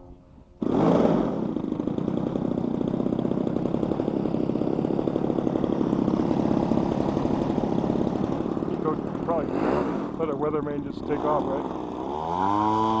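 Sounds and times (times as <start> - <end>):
model airplane engine at high power: 0.0 - 13.0.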